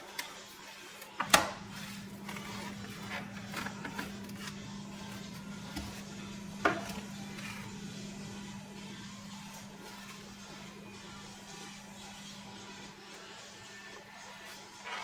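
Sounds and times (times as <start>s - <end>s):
machine humming: 1.2s - 13.0s.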